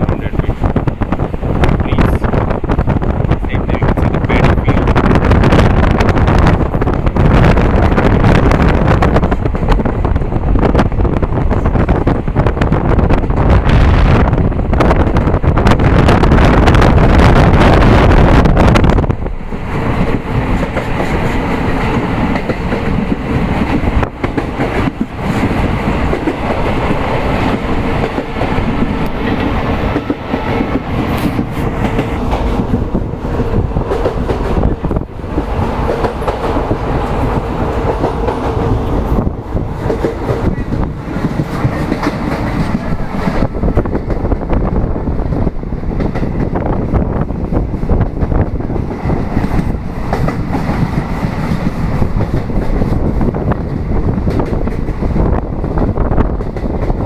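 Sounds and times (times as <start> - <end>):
train rumble on rails: 0.0 - 57.0
wind on microphone: 0.0 - 57.0
wheels clacking on track: 18.8 - 57.0.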